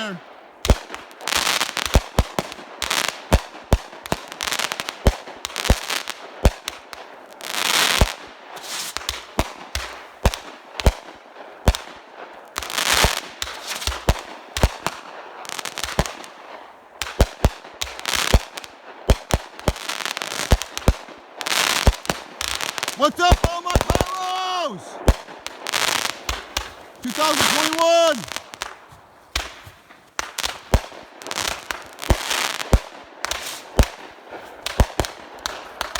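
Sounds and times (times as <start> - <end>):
fireworks bangs: 21.5 - 35.9.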